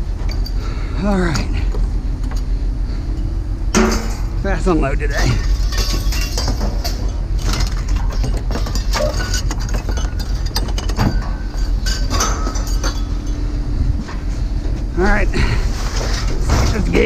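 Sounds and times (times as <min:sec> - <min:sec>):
low engine rumble: 0:00.0 - 0:17.0
scrap metal clanking: 0:03.2 - 0:04.4, 0:05.1 - 0:14.2, 0:15.4 - 0:17.0.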